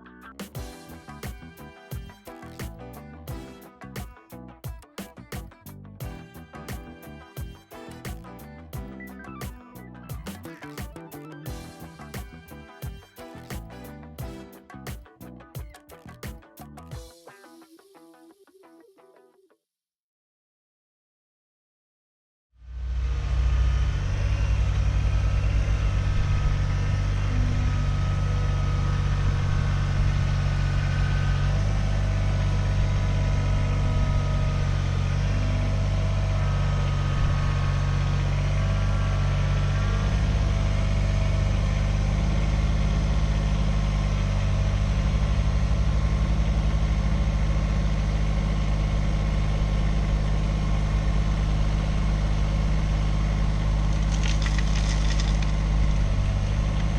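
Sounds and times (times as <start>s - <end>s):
high whine: 22.7s - 54.3s
tractor diesel engine running: 22.8s - 56.9s.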